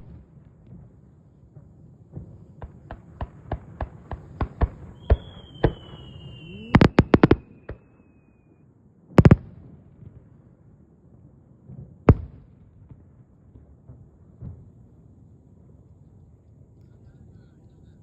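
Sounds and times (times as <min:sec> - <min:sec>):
fireworks bangs: 0:00.0 - 0:08.5
firework whistle falling in pitch: 0:04.9 - 0:08.6.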